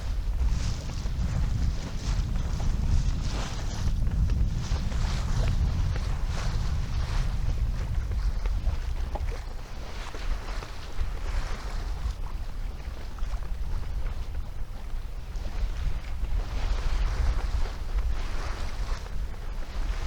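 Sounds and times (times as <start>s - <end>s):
water splashing along hull: 0.0s - 20.0s
wind buffeting microphone: 0.0s - 20.0s.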